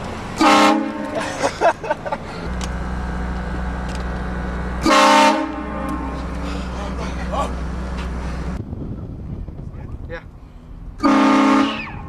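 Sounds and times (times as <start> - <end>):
low engine hum: 0.0 - 12.0
train horn blast: 0.4 - 1.2, 4.8 - 6.8, 11.0 - 12.0.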